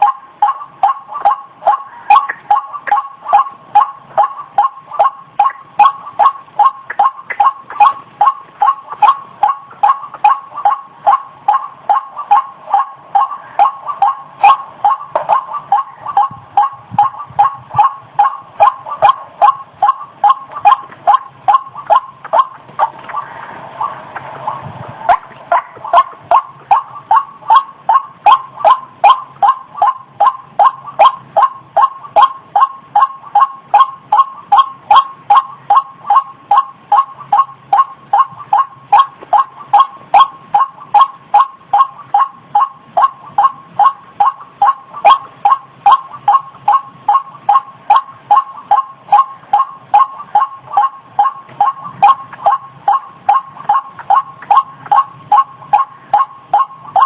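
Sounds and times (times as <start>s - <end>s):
bird calling short notes: 0.0s - 24.0s.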